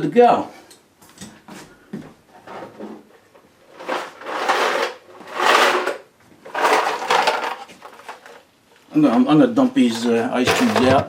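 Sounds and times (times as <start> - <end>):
plastic parts scraping and sliding: 3.7 - 9.3, 9.9 - 11.0.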